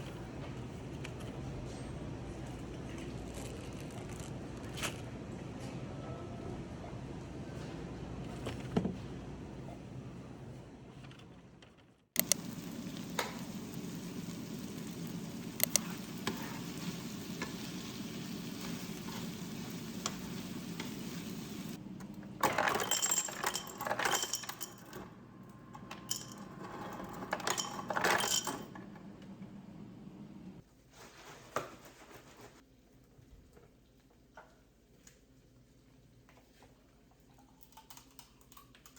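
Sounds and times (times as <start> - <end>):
isolated clicks: 12.2 - 14.3
sizzling hiss: 12.2 - 21.8
utensils clinking against dishes: 12.2 - 21.8, 22.4 - 29.1.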